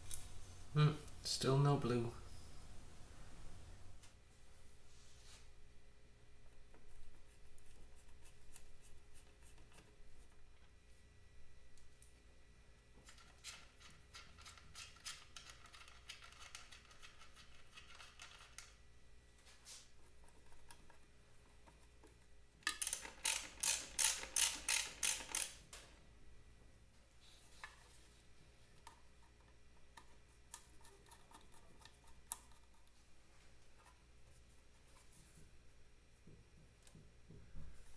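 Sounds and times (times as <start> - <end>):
small mechanical clicks: 22.7 - 25.6.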